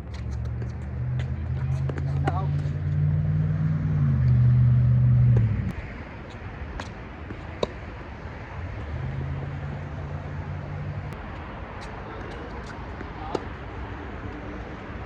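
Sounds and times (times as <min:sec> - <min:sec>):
steady background noise: 0:05.4 - 0:15.0.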